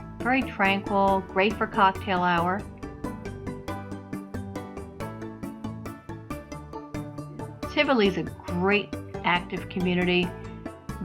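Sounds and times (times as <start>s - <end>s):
instrumental background music: 0.0s - 11.0s.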